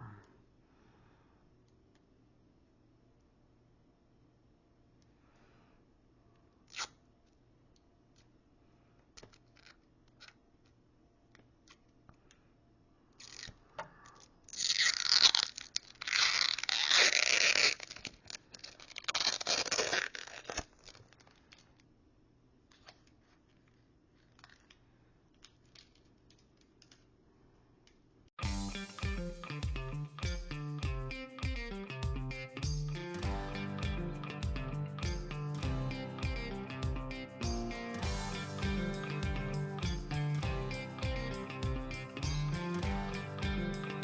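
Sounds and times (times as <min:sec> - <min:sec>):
tearing and crinkling: 0:13.2 - 0:13.6, 0:14.2 - 0:21.9.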